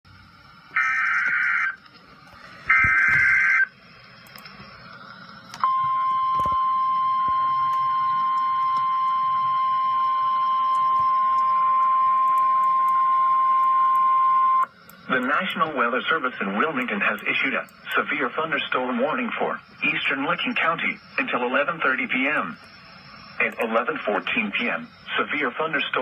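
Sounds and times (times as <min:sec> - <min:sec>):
steady warning alarm tone: 0:00.3 - 0:26.0
shrill warbling data tones: 0:00.7 - 0:01.8, 0:02.6 - 0:03.8
faint radio hiss: 0:15.0 - 0:26.0.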